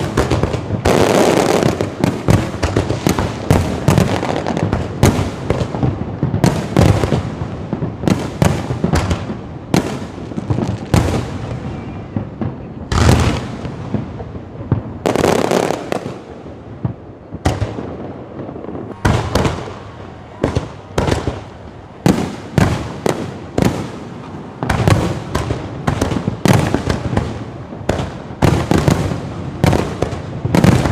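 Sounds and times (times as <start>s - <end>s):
fireworks bursting: 0.0s - 30.9s.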